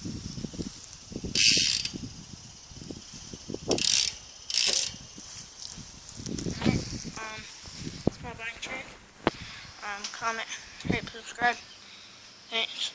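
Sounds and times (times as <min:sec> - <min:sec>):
bike freewheel hub ratcheting: 0:01.2 - 0:02.2, 0:03.3 - 0:05.8.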